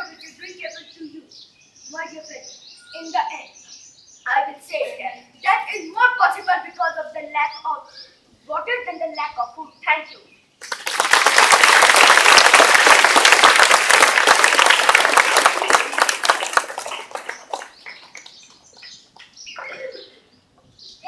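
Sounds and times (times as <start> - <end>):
audience applauding: 10.6 - 18.8.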